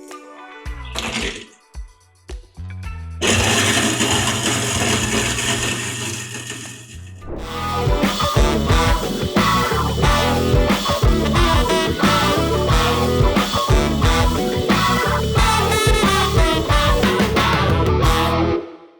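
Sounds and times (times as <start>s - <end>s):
upbeat rock music with guitar: 7.4s - 18.7s.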